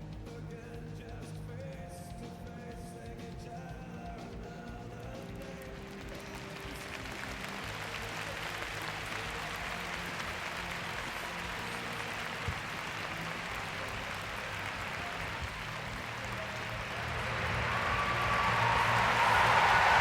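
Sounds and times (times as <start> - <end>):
audience applauding: 5.4 - 20.0.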